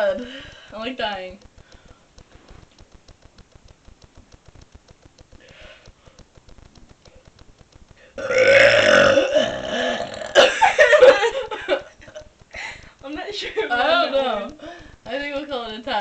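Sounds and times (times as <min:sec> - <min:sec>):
woman burping: 0:08.2 - 0:10.7.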